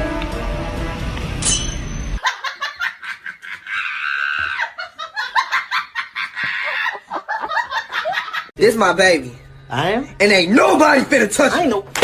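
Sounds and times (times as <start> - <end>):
music track: 0.0 - 2.2
person laughing hard: 2.2 - 8.5.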